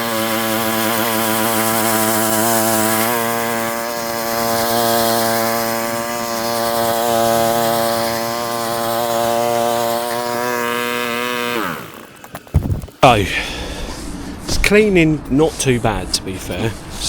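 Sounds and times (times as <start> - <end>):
small petrol engine running: 0.0 - 13.0
wire brush scrubbing tarmac: 0.0 - 13.0.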